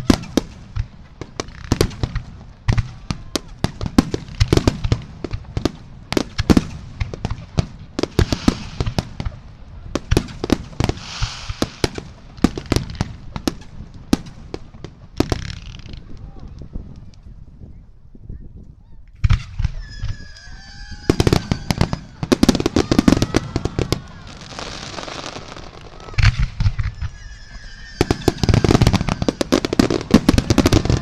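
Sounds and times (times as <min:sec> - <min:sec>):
firework hissing: 0:08.0 - 0:09.3, 0:10.7 - 0:13.0, 0:19.8 - 0:31.0.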